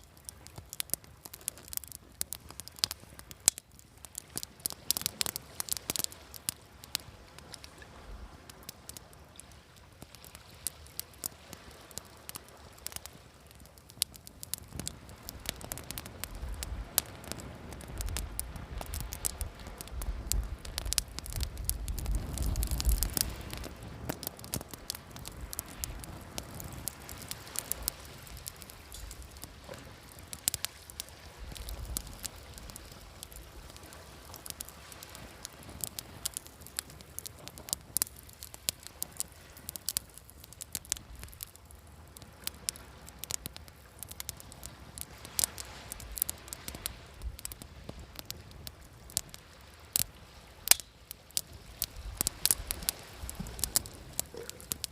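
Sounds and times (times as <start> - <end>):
campfire crackling and popping: 0.0 - 54.9
waves washing in: 14.5 - 41.4.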